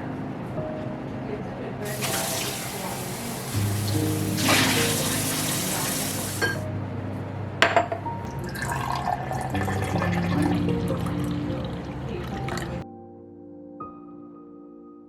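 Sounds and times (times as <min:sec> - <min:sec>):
water pouring: 0:01.8 - 0:06.6, 0:08.3 - 0:12.8.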